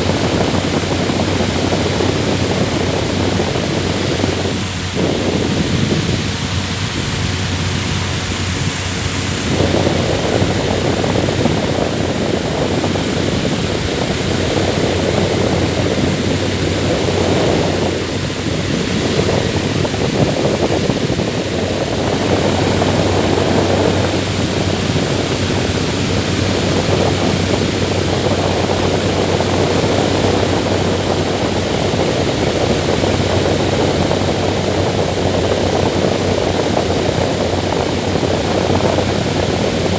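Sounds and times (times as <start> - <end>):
electric fan whirring: 0.0 - 39.9.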